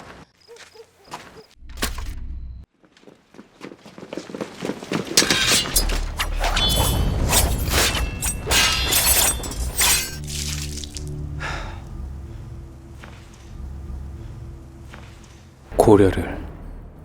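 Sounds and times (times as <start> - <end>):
swords clashing: 5.2 - 10.9
low steady drone: 9.3 - 15.8.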